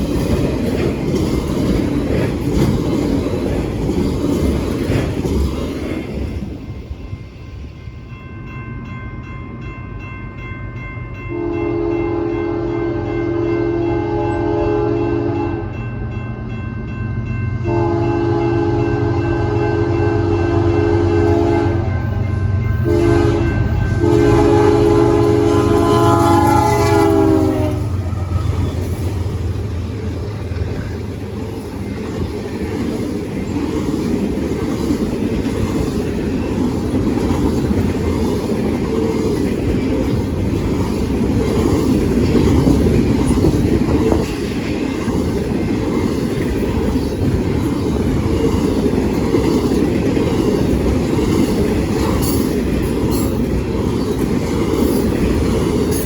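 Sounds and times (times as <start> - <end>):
clickety-clack of wheels on rails: 0.0 - 19.7, 20.8 - 56.0
freight train rumble: 0.0 - 56.0
train horn: 11.3 - 15.8, 17.6 - 29.0.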